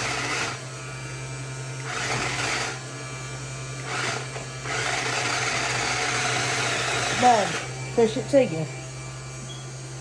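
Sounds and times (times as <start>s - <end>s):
toy motor and gears whirring: 0.0s - 0.6s, 1.9s - 2.8s, 3.8s - 8.6s.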